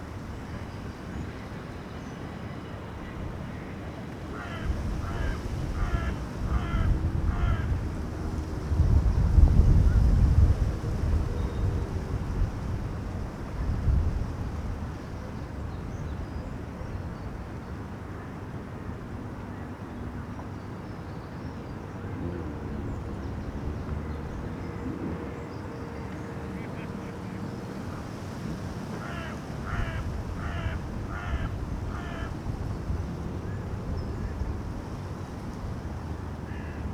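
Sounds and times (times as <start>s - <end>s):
bird calling: 29.0s - 32.3s.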